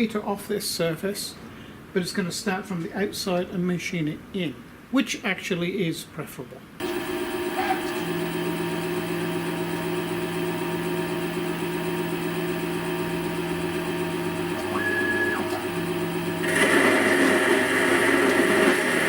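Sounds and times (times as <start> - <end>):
high machine whine: 6.8 - 19.0
lathe motor hum: 6.8 - 19.0.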